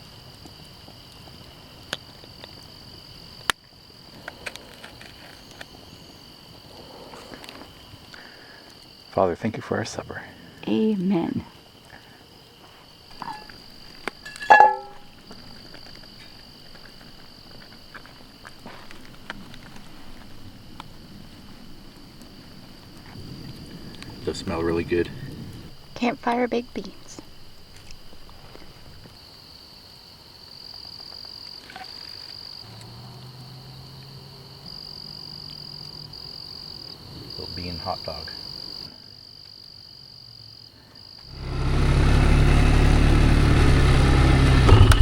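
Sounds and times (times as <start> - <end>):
night insects chorus: 0.0 - 45.0
metal clink on pot: 13.2 - 13.5, 14.2 - 15.1.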